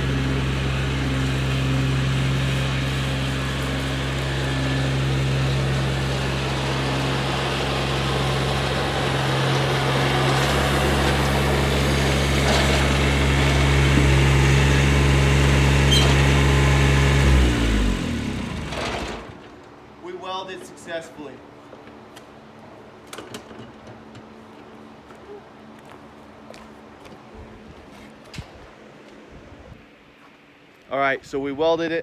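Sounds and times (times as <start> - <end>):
engine spinning down: 0.0 - 19.9
lawn tractor engine running: 0.0 - 27.1.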